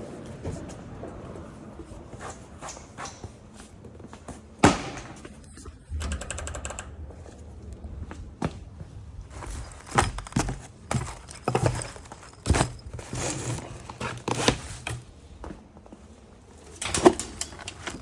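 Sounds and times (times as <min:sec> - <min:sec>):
bags rustling: 0:09.3 - 0:15.3.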